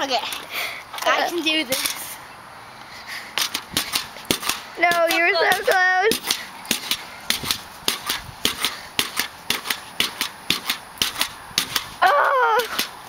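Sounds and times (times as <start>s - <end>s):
pogo stick bouncing with clanks: 3.4s - 13.0s
girl crying out: 12.0s - 12.8s.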